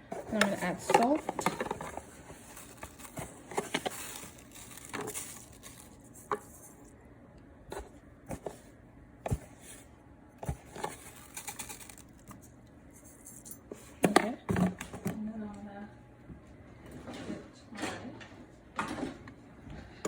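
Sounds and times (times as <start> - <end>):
kitchen utensils clicking and tapping: 0.2 - 2.0.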